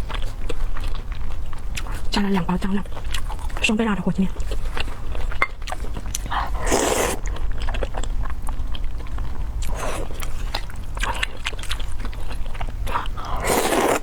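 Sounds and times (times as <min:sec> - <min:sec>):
wet chewing with mouth clicks: 0:00.0 - 0:14.0
slurping noodles: 0:06.4 - 0:07.3, 0:13.3 - 0:14.0.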